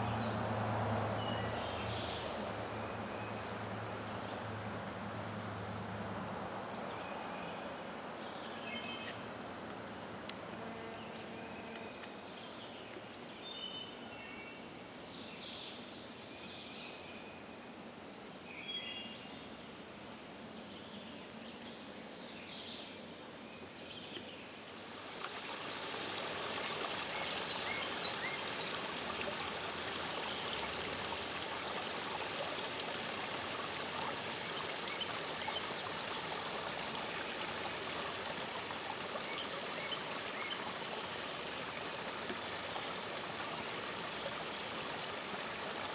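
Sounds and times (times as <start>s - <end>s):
creek water running: 0.0s - 4.5s, 24.5s - 45.9s.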